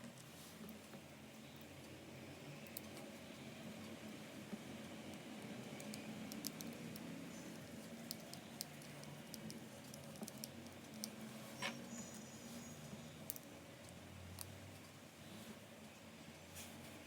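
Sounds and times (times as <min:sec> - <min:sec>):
light clicks of small parts handled: 0:05.1 - 0:11.8.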